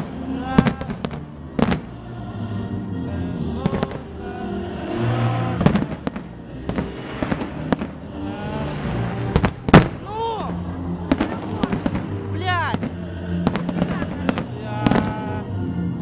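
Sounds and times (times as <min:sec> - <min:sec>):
fireworks bangs: 0:00.0 - 0:02.0, 0:05.1 - 0:15.5
music playing: 0:00.0 - 0:16.0.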